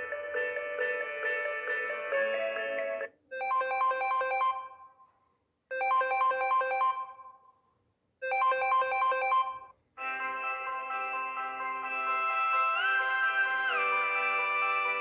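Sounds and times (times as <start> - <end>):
phone ringtone notes: 0.0 - 4.8
ringtone with held notes: 0.0 - 5.0, 8.2 - 15.0.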